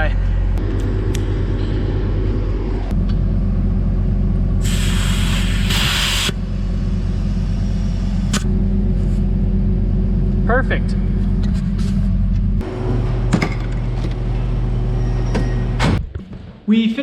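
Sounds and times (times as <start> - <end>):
compressed air hissing: 4.6 - 8.4
motor running: 4.6 - 8.9.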